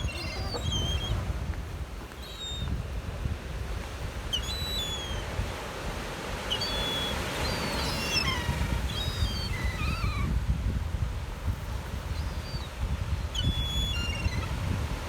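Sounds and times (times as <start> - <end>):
gulls calling: 0.0 - 3.0, 4.2 - 5.3, 6.4 - 10.3.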